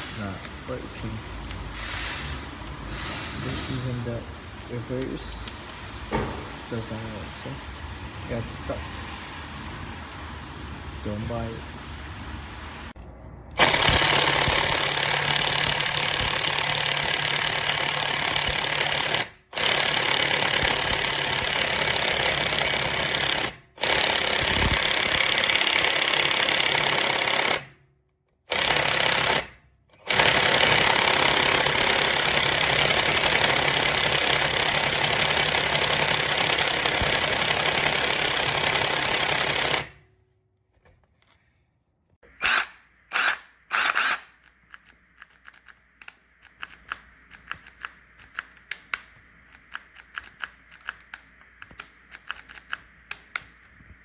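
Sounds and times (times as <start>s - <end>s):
impact wrench hammering: 1.7s - 4.0s, 6.1s - 6.7s, 13.6s - 27.7s, 30.1s - 39.9s.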